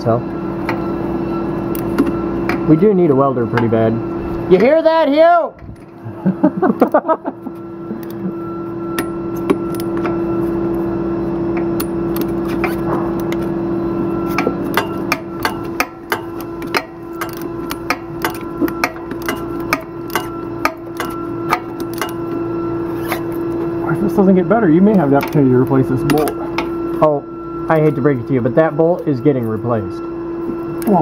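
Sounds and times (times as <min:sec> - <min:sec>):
steady machine hum: 0:00.0 - 0:31.0
hand tools tapping on metal: 0:03.5 - 0:03.8, 0:14.3 - 0:22.4, 0:24.9 - 0:26.7.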